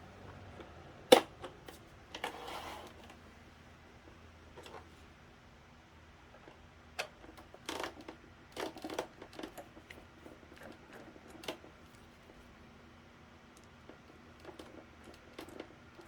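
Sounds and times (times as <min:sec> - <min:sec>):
fan parts clicking and rattling: 0:07.0 - 0:12.4.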